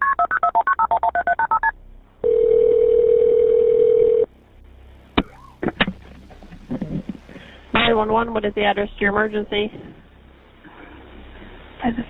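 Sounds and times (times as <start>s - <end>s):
telephone ringing tone: 0.0s - 4.3s.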